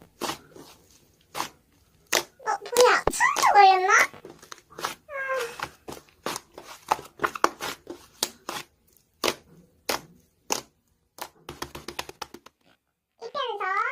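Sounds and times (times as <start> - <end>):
sharp irregular clicks and taps: 11.2 - 12.6.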